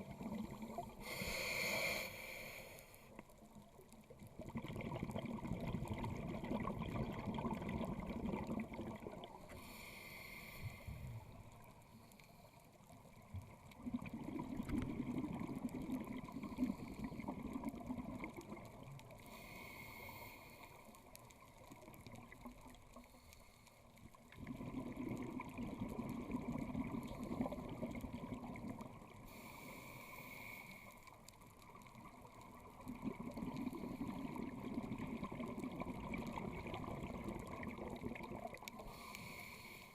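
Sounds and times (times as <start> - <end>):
exhaled bubbles underwater: 0.0 - 1.2, 3.7 - 9.6, 13.2 - 19.2, 24.2 - 29.4, 31.6 - 39.1
regulator inhalation hiss: 1.0 - 3.1, 9.5 - 11.2, 29.3 - 31.0, 38.8 - 39.9.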